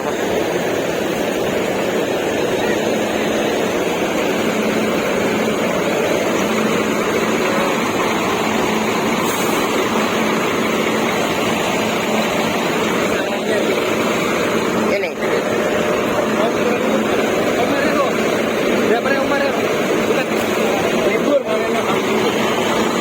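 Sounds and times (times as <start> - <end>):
diesel coach engine droning: 0.0 - 23.0
short air hiss: 9.2 - 9.7.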